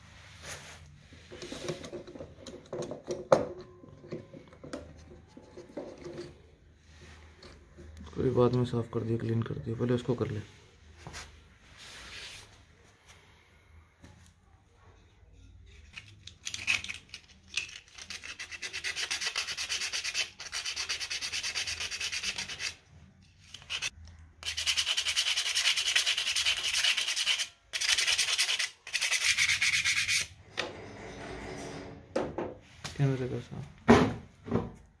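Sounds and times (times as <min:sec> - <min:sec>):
sandpaper rubbing on metal: 0:18.0 - 0:22.8, 0:23.5 - 0:30.3.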